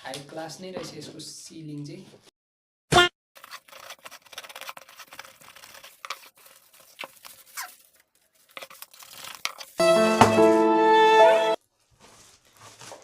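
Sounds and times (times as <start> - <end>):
packaging being torn open: 3.4 - 9.8.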